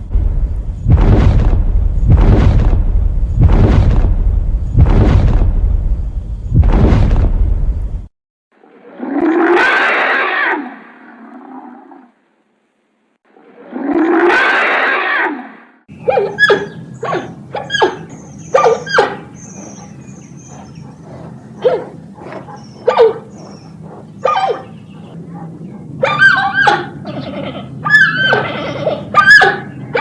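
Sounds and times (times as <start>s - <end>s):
animal bark-like calls and yelps: 9.3s - 12.1s, 13.5s - 30.0s.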